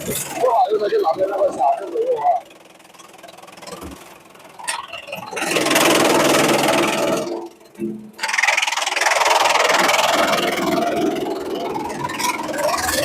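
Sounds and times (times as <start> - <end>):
shredder grinding bamboo: 4.7 - 7.5, 8.2 - 13.0.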